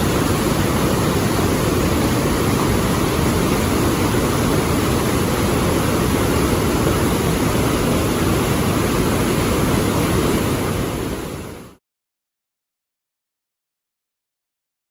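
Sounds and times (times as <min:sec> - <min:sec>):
waterfall roar: 0:00.0 - 0:11.8.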